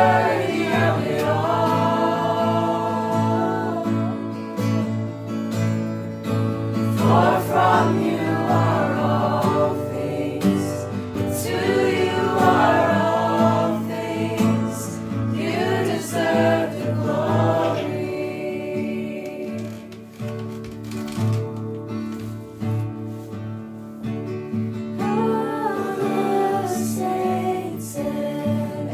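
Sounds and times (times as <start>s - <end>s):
choir singing: 0.0s - 5.4s, 6.7s - 20.0s, 25.0s - 28.9s.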